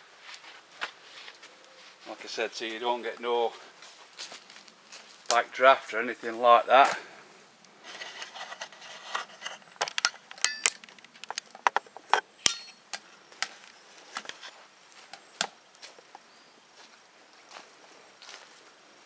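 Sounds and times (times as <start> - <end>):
metal stove parts knocking and clattering: 9.9 - 10.9, 12.4 - 12.8
ringing metallic clinks: 10.4 - 10.8.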